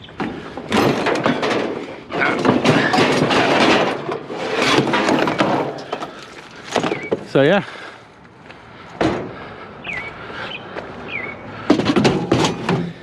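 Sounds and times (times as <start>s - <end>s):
scrap rustling and clattering: 0.2s - 7.3s, 11.7s - 13.0s.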